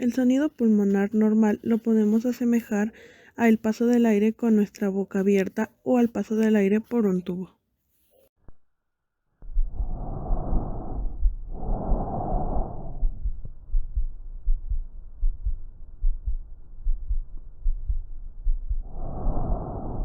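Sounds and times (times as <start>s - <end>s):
breath sounds through stethoscope: 2.9s - 3.4s, 9.7s - 13.4s, 18.8s - 20.0s
heartbeat thuds: 10.9s - 19.5s.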